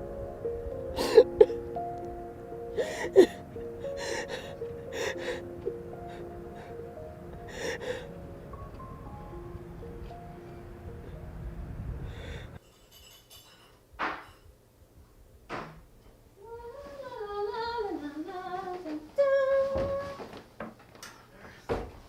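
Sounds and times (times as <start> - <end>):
background music: 0.0 - 12.6
woman humming a tune: 0.7 - 8.8.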